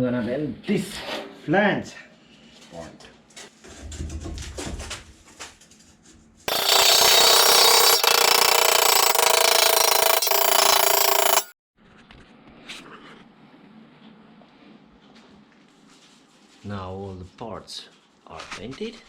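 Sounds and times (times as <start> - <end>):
electric welder crackling buzz: 6.5 - 11.5.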